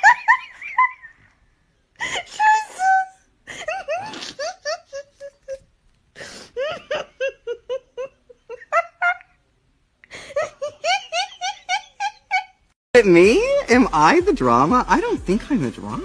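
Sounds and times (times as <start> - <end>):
hysterical high-pitched laughter: 2.3 - 5.6, 6.6 - 9.4, 10.3 - 12.6.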